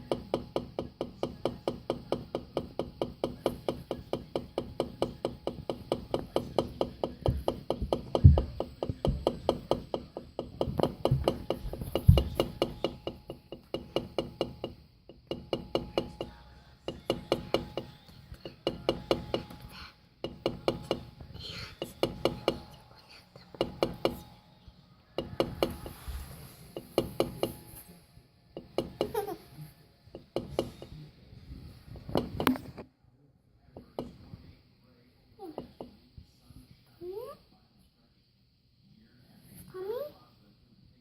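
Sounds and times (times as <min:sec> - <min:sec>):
heavy thumps: 0:00.0 - 0:16.3
microwave oven knocking: 0:00.0 - 0:19.6, 0:20.2 - 0:21.2, 0:21.8 - 0:22.7, 0:23.6 - 0:24.3, 0:25.2 - 0:26.0.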